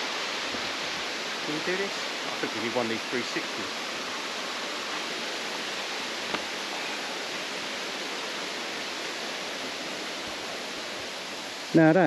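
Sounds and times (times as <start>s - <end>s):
waterfall rushing: 0.0s - 12.0s
faint tap: 6.3s - 6.5s.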